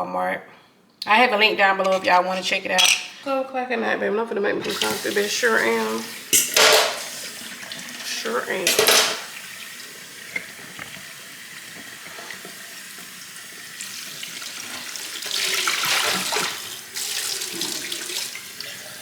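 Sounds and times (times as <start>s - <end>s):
tap running water into sink: 4.6s - 19.0s.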